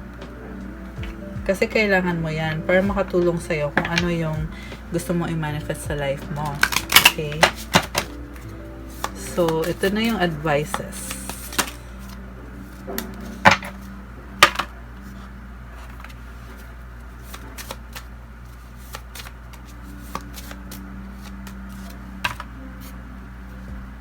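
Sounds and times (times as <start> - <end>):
cards ticking and flicking: 6.0 - 14.7, 17.1 - 23.0
cards snapping: 6.3 - 14.7, 17.2 - 22.9.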